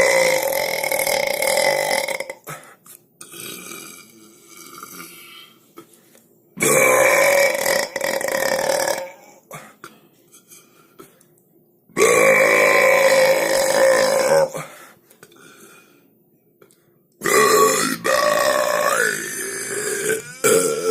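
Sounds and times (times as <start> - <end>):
loud human burps: 0.0 - 2.6, 3.2 - 5.4, 6.6 - 9.6, 12.0 - 14.7, 17.2 - 20.9.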